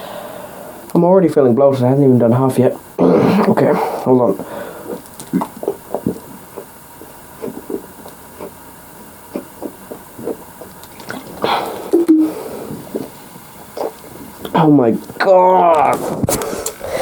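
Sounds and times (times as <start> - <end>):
throat sound: 3.0 - 8.6, 9.2 - 14.6
person gulping fizzy drink: 4.2 - 15.2.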